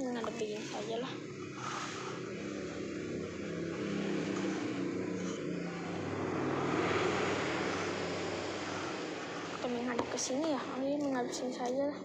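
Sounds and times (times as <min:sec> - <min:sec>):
vehicle engine humming: 0:00.0 - 0:12.0.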